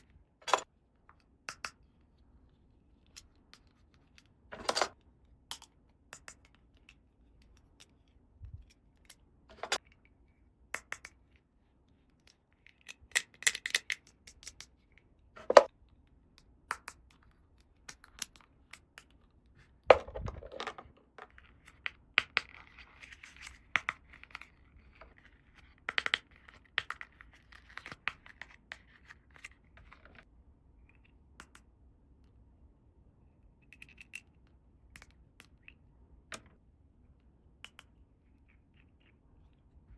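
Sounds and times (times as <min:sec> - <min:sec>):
plastic toy pieces clicking: 0:12.7 - 0:14.7.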